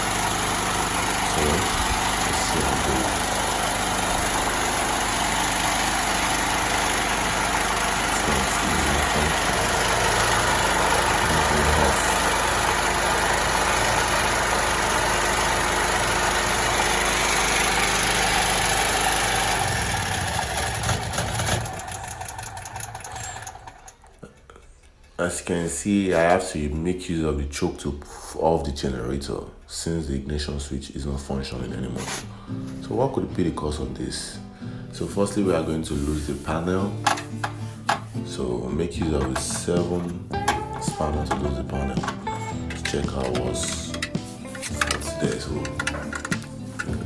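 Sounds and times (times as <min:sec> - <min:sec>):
generator engine running: 0:00.0 - 0:24.4, 0:33.8 - 0:47.0
engine stumbling and dying: 0:00.0 - 0:24.9, 0:37.1 - 0:47.0.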